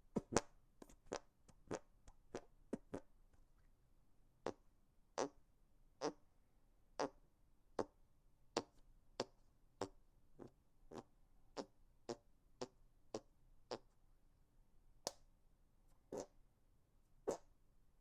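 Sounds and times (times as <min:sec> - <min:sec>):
hand fart pops: 0:00.2 - 0:00.5, 0:01.1 - 0:03.1, 0:05.2 - 0:05.4, 0:06.0 - 0:06.2, 0:08.6 - 0:13.9.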